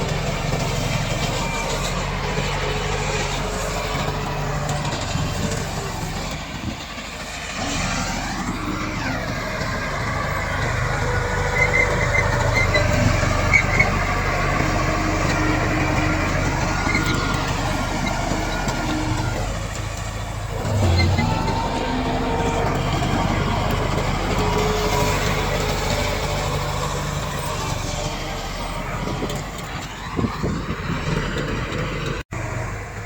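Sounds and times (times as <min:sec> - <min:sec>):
bulldozer diesel engine running: 0:00.0 - 0:33.0
short high squeaks: 0:11.3 - 0:19.4, 0:20.6 - 0:21.9.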